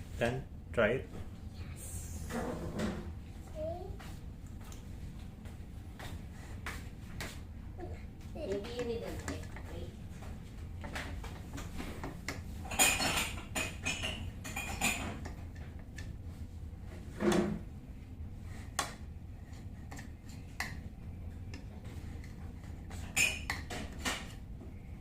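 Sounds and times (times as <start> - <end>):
utensils and dishes clattering: 12.6 - 15.3, 23.0 - 24.4.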